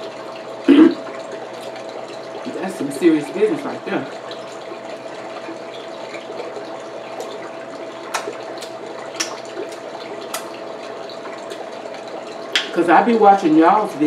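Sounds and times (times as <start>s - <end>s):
faint steady hum: 0.0s - 14.0s
eating clicks and smacks: 8.1s - 10.6s.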